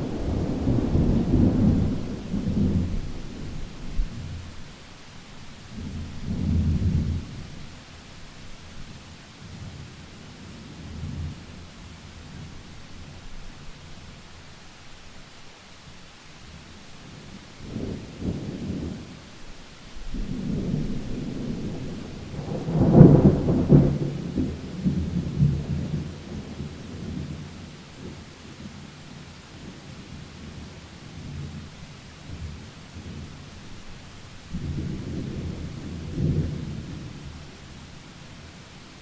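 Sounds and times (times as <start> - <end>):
rolling thunder: 0.0 - 4.4, 20.1 - 27.4, 34.5 - 37.5
steady rain: 0.0 - 39.0.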